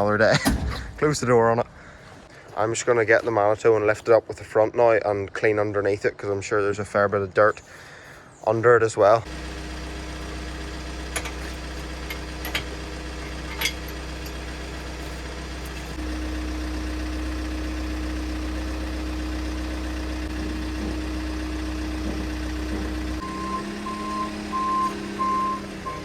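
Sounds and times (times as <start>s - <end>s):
diesel engine idling and revving: 9.2s - 26.0s.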